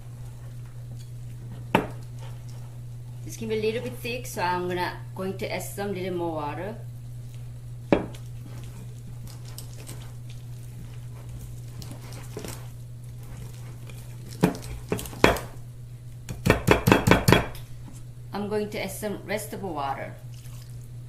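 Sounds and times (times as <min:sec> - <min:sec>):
steady low hum: 0:00.0 - 0:21.0
utensil knocking against mixing bowl: 0:16.3 - 0:17.5.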